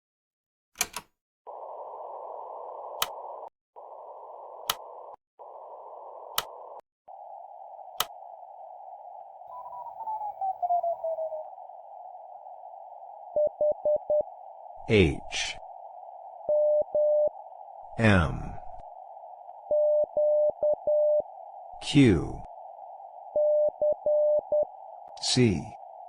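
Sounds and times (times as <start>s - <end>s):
radio hiss: 1.5s - 26.0s
morse code beeps: 16.5s - 17.3s, 19.7s - 21.2s, 23.3s - 24.7s.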